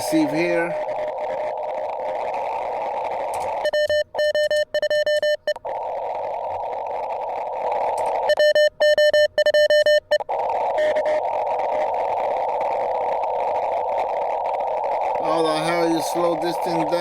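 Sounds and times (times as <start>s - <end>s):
receiver static hiss: 0.0s - 17.0s
morse code tone: 3.4s - 5.6s, 8.2s - 10.2s.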